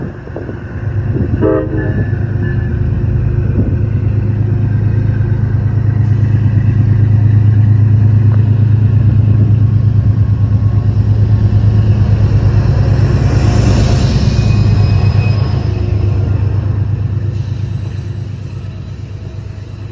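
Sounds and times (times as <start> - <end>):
locomotive engine drone: 0.0 - 19.9
locomotive horn honk: 1.4 - 2.8.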